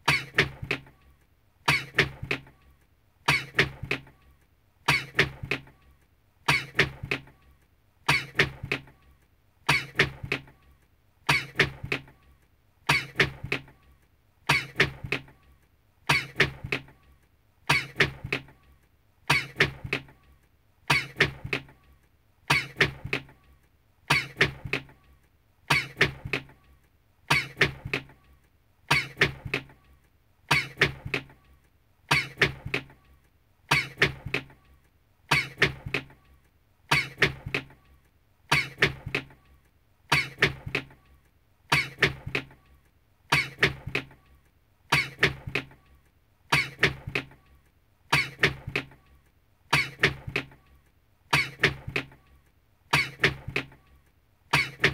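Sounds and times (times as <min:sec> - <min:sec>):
person sneezing: 0:00.0 - 0:00.5, 0:01.7 - 0:02.1, 0:03.3 - 0:03.7, 0:04.9 - 0:05.3, 0:06.5 - 0:07.0, 0:08.1 - 0:08.5, 0:09.7 - 0:10.1, 0:11.3 - 0:11.8, 0:12.9 - 0:13.3, 0:30.5 - 0:30.9, 0:33.7 - 0:34.1, 0:35.3 - 0:35.7, 0:36.9 - 0:37.3, 0:38.5 - 0:39.0, 0:40.1 - 0:40.6, 0:41.7 - 0:42.1, 0:43.3 - 0:43.8, 0:44.9 - 0:45.4, 0:46.5 - 0:47.0, 0:48.1 - 0:48.6, 0:49.7 - 0:50.2, 0:52.9 - 0:53.3.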